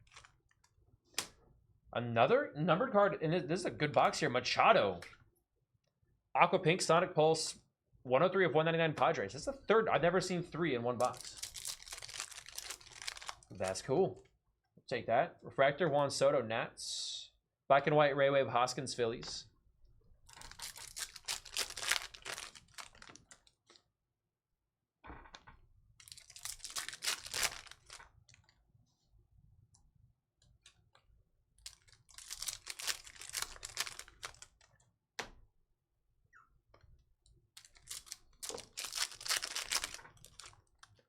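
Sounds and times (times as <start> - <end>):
card packs crinkling and rustling: 0.0 - 0.4, 11.0 - 13.8, 20.3 - 23.5, 26.0 - 28.4, 31.7 - 34.7, 37.6 - 40.8.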